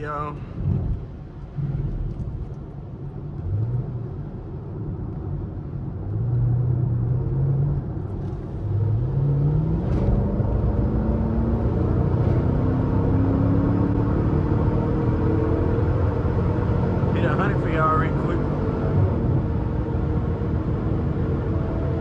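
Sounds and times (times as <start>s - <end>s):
car engine accelerating: 6.0s - 22.0s.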